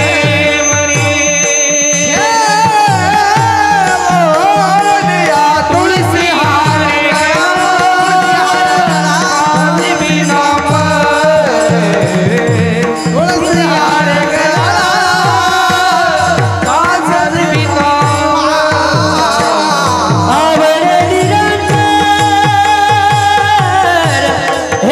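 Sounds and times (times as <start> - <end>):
wavering melodic line: 0.0 - 5.4.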